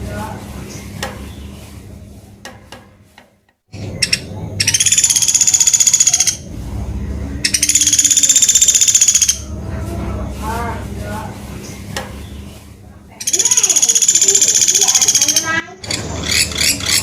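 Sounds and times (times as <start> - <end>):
woodpecker rattling trills: 3.8 - 6.5, 7.4 - 9.5, 13.2 - 17.0.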